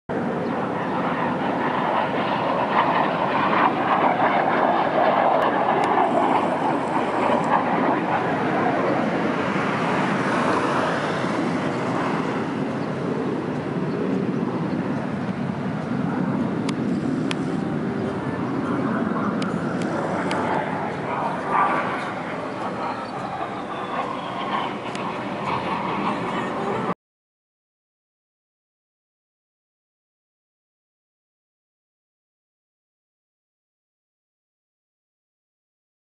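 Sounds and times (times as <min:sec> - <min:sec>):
military jet aircraft in flight: 0:00.1 - 0:27.0.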